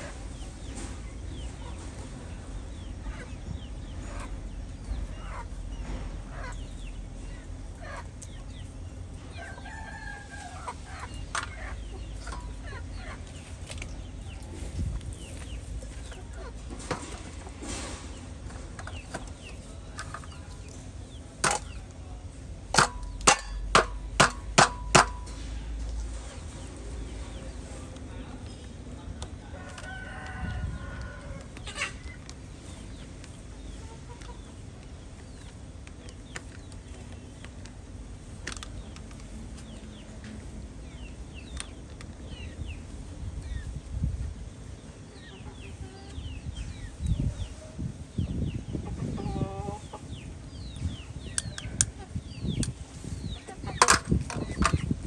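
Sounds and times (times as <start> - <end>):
chickens clucking: 0.0 - 37.6, 44.6 - 55.0
rooster crowing: 9.4 - 10.8, 29.4 - 31.5
sharp knocks: 22.8 - 25.4.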